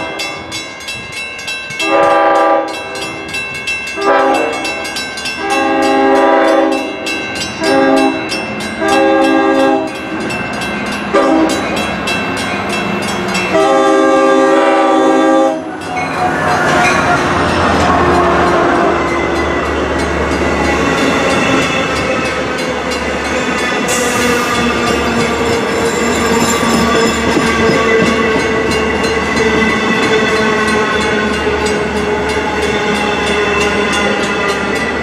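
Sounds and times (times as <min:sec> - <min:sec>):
train horn blasts: 0:00.0 - 0:00.4, 0:01.8 - 0:03.2, 0:04.0 - 0:10.0, 0:11.1 - 0:11.8, 0:13.5 - 0:19.4
train wheels clickety-clack: 0:15.6 - 0:35.0.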